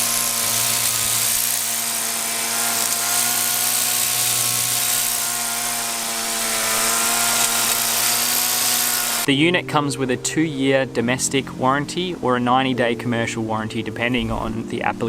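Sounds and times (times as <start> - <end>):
two-stroke trimmer engine running: 0.0 - 9.3.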